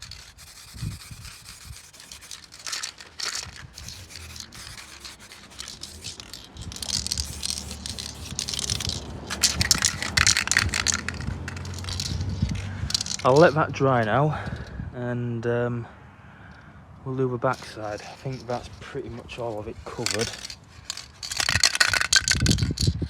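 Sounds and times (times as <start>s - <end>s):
wind rumble on microphone: 0.0s - 2.2s, 5.8s - 15.3s, 21.4s - 23.0s
spray paint can hissing: 0.0s - 13.3s, 20.0s - 22.9s.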